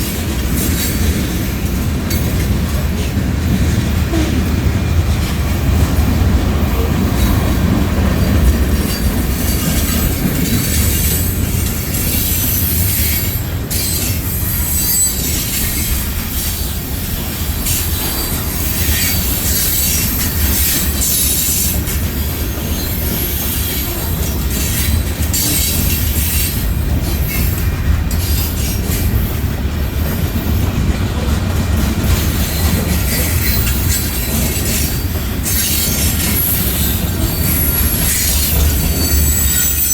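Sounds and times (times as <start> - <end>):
steel wheels rumbling on rails: 0.0 - 39.9
high-pitched wheel squeal: 35.5 - 39.9.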